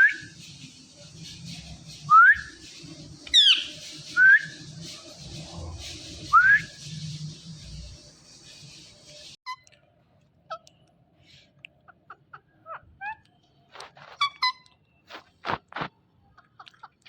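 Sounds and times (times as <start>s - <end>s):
parakeet whistled calls: 3.3s - 4.6s.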